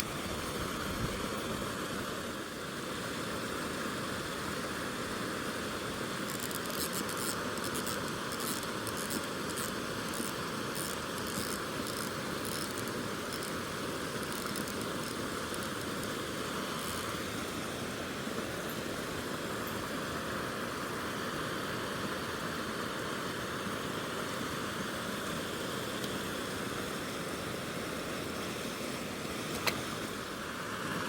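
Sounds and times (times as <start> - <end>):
stream water rushing into pool: 0.0 - 31.0.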